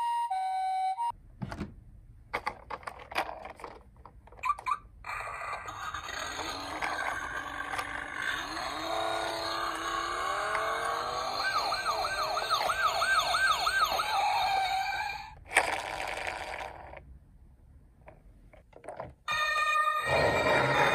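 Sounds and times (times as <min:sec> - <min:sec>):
toy sirens: 0:00.0 - 0:01.1, 0:04.4 - 0:15.4, 0:19.3 - 0:20.9.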